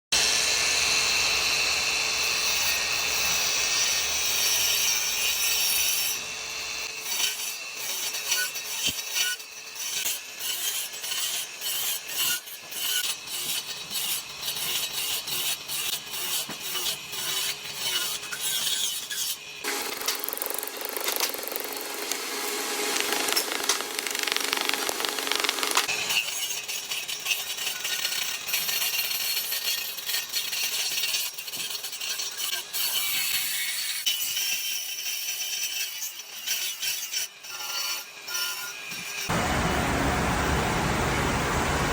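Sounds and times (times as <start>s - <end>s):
tool scraping wood: 7.2s - 31.9s.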